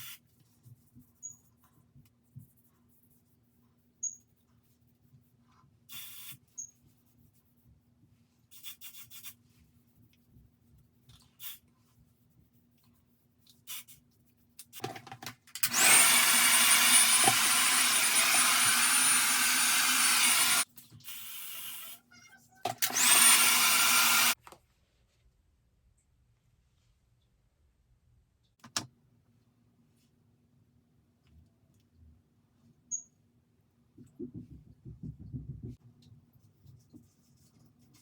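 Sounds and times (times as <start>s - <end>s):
hair dryer motor whine: 15.6s - 20.6s, 22.8s - 24.4s.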